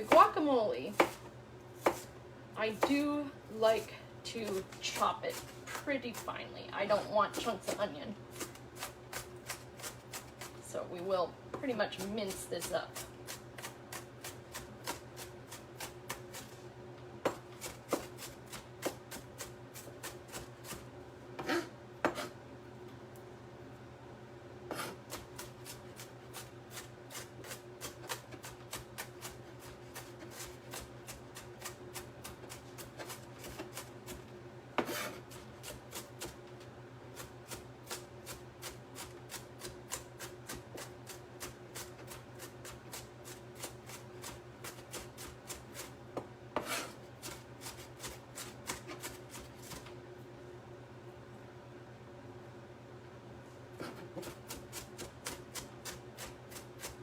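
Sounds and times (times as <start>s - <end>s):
knife chopping on cutting board: 0.0s - 1.2s, 1.8s - 2.1s, 2.8s - 3.0s, 11.5s - 16.4s, 17.2s - 20.8s, 21.4s - 22.4s, 24.7s - 34.2s, 34.8s - 36.4s, 37.5s - 49.9s.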